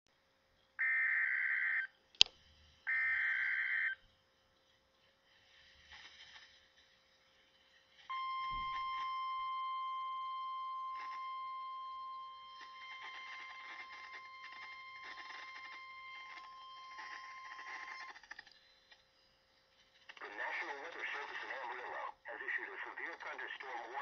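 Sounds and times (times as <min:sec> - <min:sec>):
radio static crackles: 0:07.7 - 0:09.6, 0:10.6 - 0:18.2, 0:20.0 - 0:24.0
high-pitched warning beep: 0:08.1 - 0:18.1.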